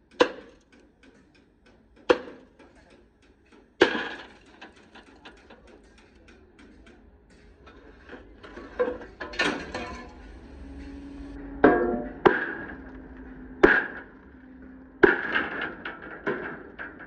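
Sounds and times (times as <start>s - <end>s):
hammer striking steel: 0.0s - 14.3s, 15.0s - 17.0s.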